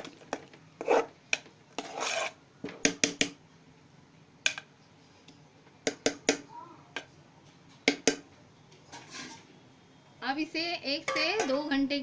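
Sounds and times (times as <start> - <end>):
batter beaten and scraped in bowl: 1.8 - 2.4.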